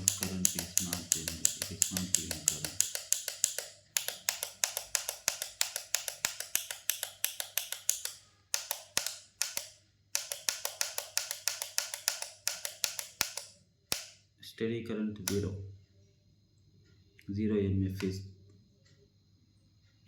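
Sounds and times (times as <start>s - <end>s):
rapid sharp clicks: 0.0s - 14.2s
faint mains hum: 0.0s - 20.0s.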